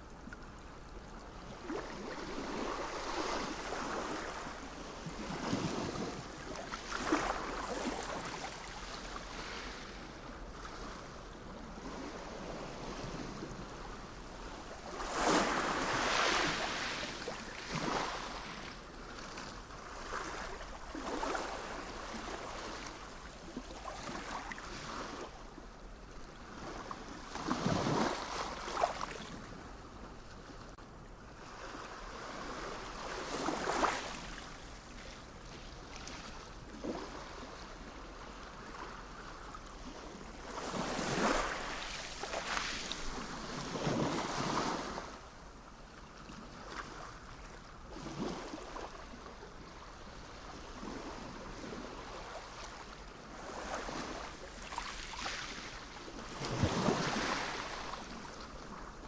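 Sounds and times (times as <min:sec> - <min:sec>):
sea waves washing in: 0:11.7 - 0:18.8, 0:40.5 - 0:45.3, 0:50.8 - 0:59.0.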